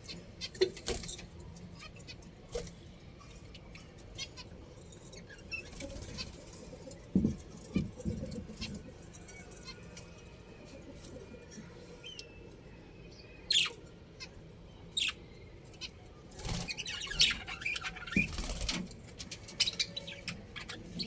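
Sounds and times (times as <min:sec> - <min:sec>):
budgerigars chirping: 0:13.5 - 0:14.4, 0:15.0 - 0:18.7, 0:19.5 - 0:21.0.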